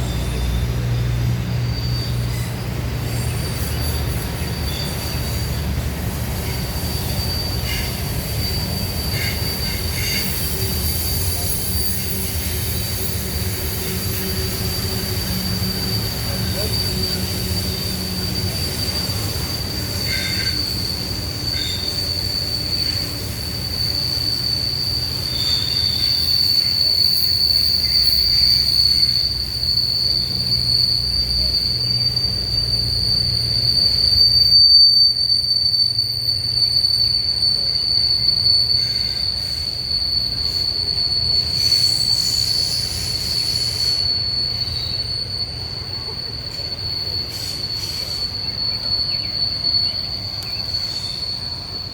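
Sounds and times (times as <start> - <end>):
freight cars rumbling: 0.0 - 34.4
train wheels squealing on curve: 0.0 - 51.9.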